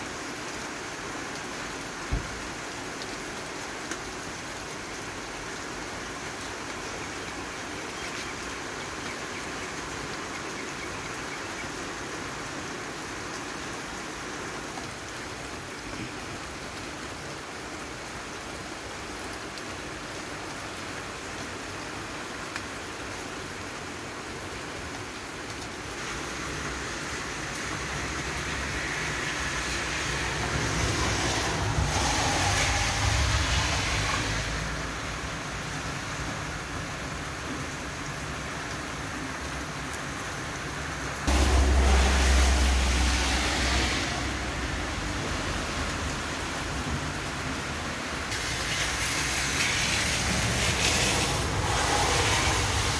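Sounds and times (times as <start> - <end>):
steady rain: 0.0 - 52.9
vehicle rumble passing: 25.8 - 37.4, 41.0 - 52.9.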